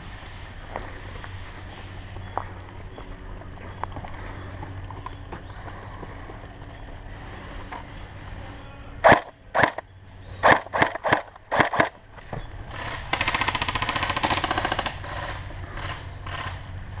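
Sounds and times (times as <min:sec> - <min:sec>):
airsoft full-auto burst: 0:09.0 - 0:09.8, 0:10.4 - 0:12.0
airsoft gun single shots: 0:09.0 - 0:09.8, 0:10.4 - 0:12.0.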